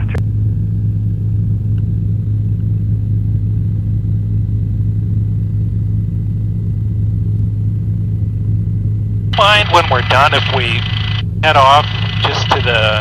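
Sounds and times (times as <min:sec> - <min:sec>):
helicopter rotor and engine drone: 0:00.0 - 0:13.0
faint high whine: 0:09.3 - 0:13.0
radio click: 0:09.4 - 0:13.0.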